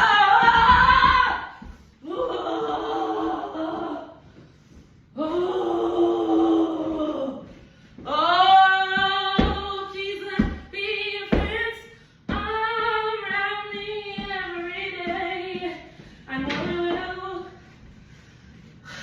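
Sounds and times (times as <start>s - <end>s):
woman singing long notes: 0.0s - 4.1s, 5.2s - 11.7s.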